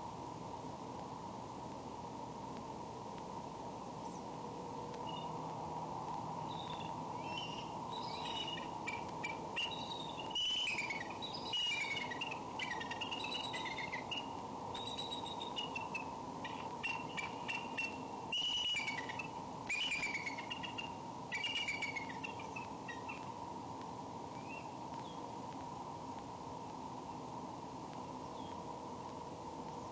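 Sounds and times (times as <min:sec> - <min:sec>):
steady hum: 0:00.0 - 0:29.9
eagles chittering whistled calls: 0:05.0 - 0:05.4, 0:06.4 - 0:23.4, 0:24.4 - 0:25.2.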